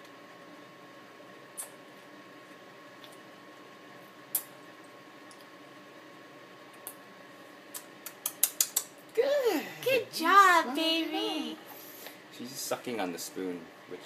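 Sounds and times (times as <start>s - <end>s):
low room hiss: 0.0s - 14.0s
wet mouth and spoon clicks: 4.3s - 4.5s, 7.7s - 8.9s.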